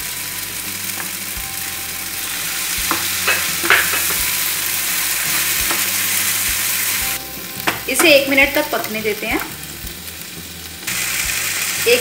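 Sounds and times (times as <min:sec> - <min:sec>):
sauce sizzling in a hot pan: 0:00.0 - 0:12.0
spatula scraping a pan: 0:02.2 - 0:08.1.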